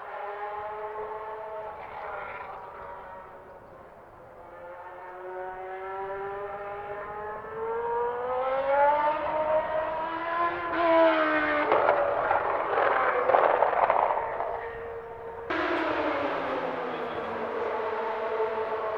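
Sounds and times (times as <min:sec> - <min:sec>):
racing car engine screaming: 0:15.5 - 0:18.9.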